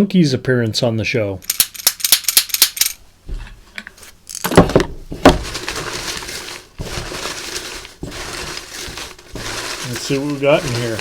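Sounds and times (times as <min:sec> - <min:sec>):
small objects rattling: 0:01.4 - 0:03.0, 0:04.3 - 0:11.0.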